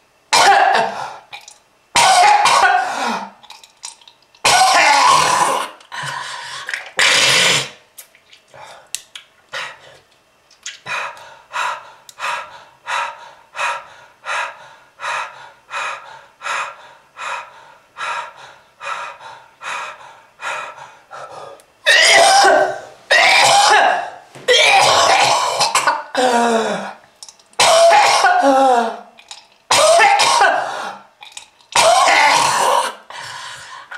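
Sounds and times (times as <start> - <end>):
person coughing: 0.3 - 1.1, 2.0 - 3.4, 4.4 - 5.8, 21.9 - 27.0, 27.6 - 29.0, 29.7 - 31.0, 31.8 - 33.0.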